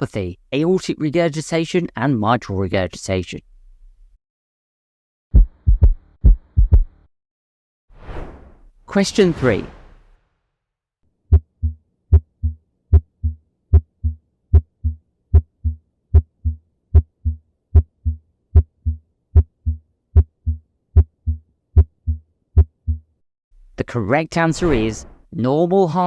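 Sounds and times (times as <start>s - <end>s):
heartbeat lub-dub thumps: 5.3s - 7.0s, 11.3s - 23.2s.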